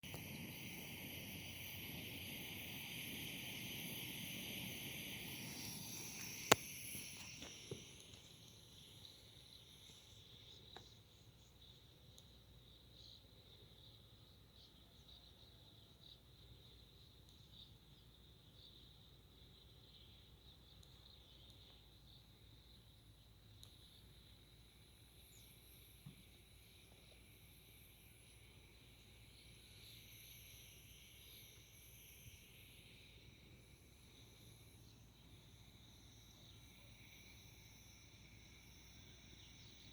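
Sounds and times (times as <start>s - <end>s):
insects chirring: 0.0s - 39.9s
sharp click: 6.2s - 8.2s.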